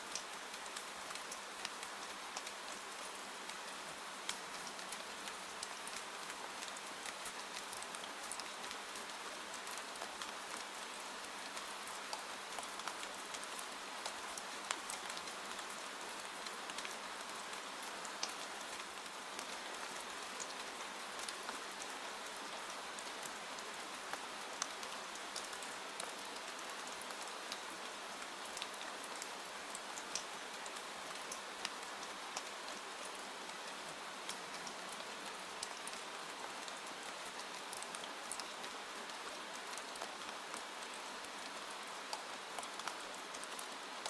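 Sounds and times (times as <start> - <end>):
rain pattering on a window: 0.0 - 44.0.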